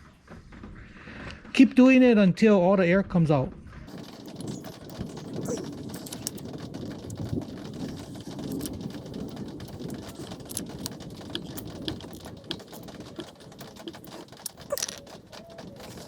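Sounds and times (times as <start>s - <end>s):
small clicks and taps: 3.9s - 16.0s.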